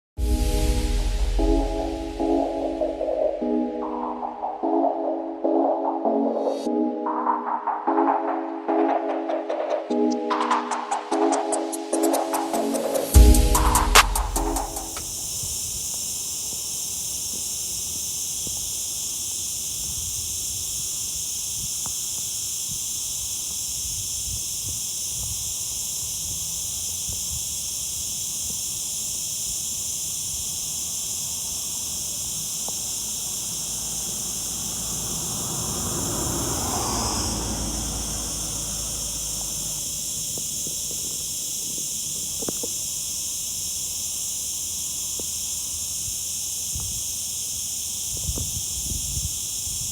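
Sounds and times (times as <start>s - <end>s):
rush of low noise: 0.2s - 11.3s, 12.2s - 15.6s, 32.9s - 42.4s
cicadas buzzing: 0.2s - 49.9s.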